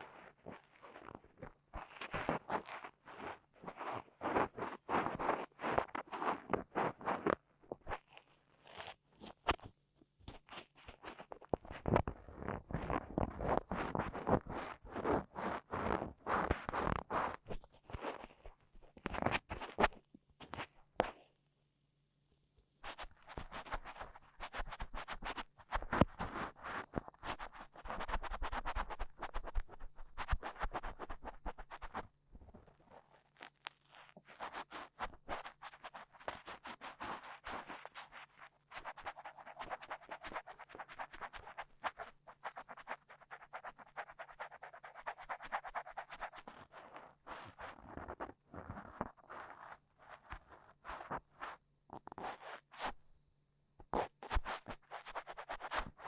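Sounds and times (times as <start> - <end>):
cotton swab scratching in ear: 1.8 - 9.7, 22.9 - 32.0, 32.9 - 51.5.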